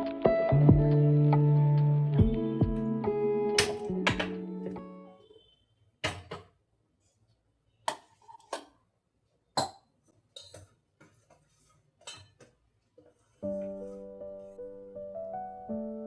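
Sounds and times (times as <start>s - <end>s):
dishes knocking and clinking: 3.6s - 4.4s, 6.0s - 6.5s, 7.9s - 8.8s, 9.6s - 11.2s, 12.0s - 12.6s.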